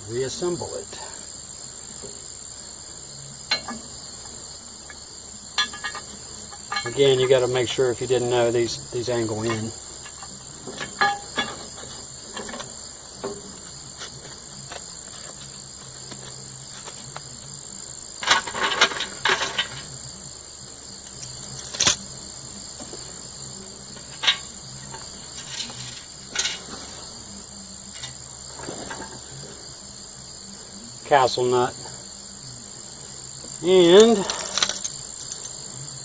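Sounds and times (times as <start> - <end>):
metal parts clinking and clanking: 3.5 - 3.9, 5.6 - 7.4, 9.3 - 12.7, 18.2 - 19.9, 21.1 - 22.0, 24.1 - 26.8, 34.0 - 35.6.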